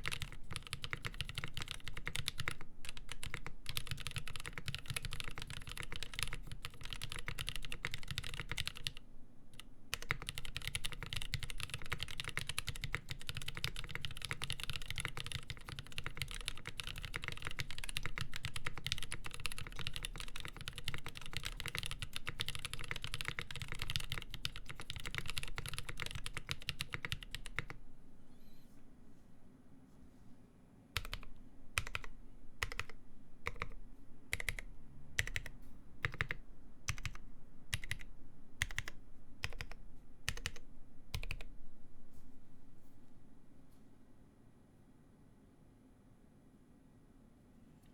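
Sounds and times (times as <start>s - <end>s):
fast typing on mechanical keyboard: 0.0s - 9.0s, 9.6s - 27.8s, 31.0s - 41.5s.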